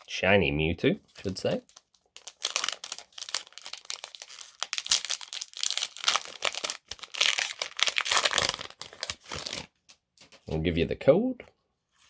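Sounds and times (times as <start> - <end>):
foil wrapper crinkling: 1.1 - 10.4.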